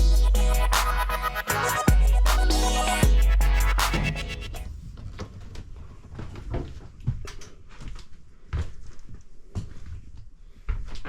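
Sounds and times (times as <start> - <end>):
low rumble: 1.9 - 6.9.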